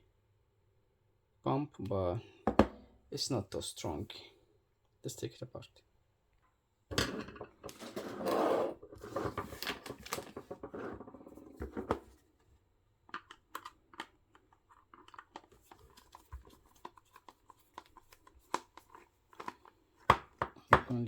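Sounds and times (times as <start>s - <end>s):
plastic rustling and scraping: 7.6s - 12.3s, 14.5s - 20.1s.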